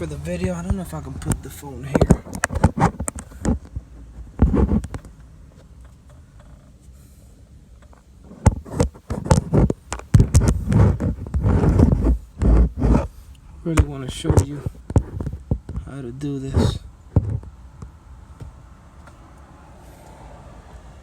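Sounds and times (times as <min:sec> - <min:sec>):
scraping: 0:00.0 - 0:05.1, 0:08.3 - 0:17.5
phone handling knocks and taps: 0:00.4 - 0:03.8, 0:08.5 - 0:13.1, 0:13.8 - 0:15.9.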